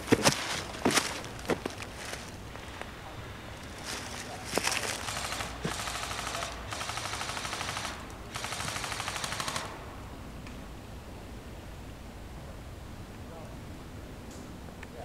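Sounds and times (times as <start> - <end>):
airsoft rifle firing full auto: 4.7 - 9.8.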